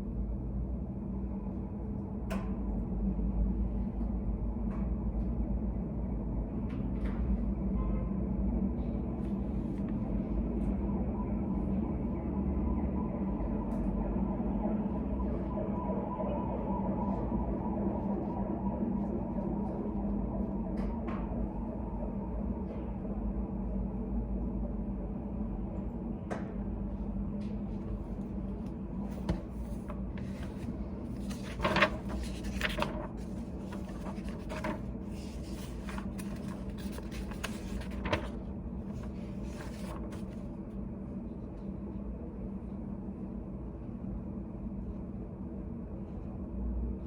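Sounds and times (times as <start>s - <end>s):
low room hum: 0.0s - 47.0s.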